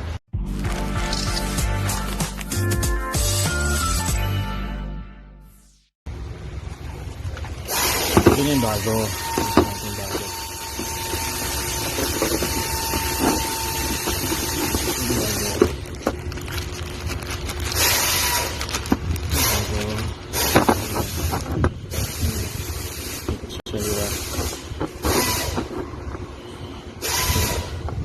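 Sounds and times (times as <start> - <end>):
hissing air bursts: 7.7 - 9.1, 19.3 - 25.8, 27.0 - 27.8.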